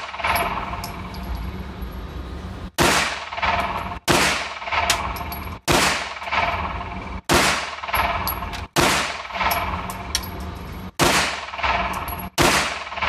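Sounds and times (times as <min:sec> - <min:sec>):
pistol shots echoing: 0:02.8 - 0:05.1, 0:05.7 - 0:06.6, 0:07.3 - 0:09.8, 0:11.0 - 0:13.0.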